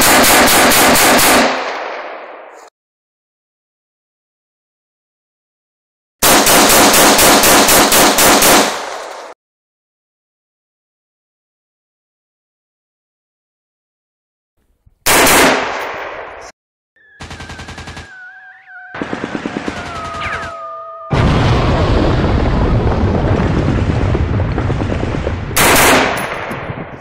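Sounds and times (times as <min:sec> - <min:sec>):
rapid gunfire: 0:00.0 - 0:02.2, 0:06.2 - 0:09.4, 0:15.1 - 0:16.3, 0:17.2 - 0:18.2, 0:19.0 - 0:20.5, 0:25.6 - 0:26.7
loud single gunshot: 0:25.6 - 0:26.7.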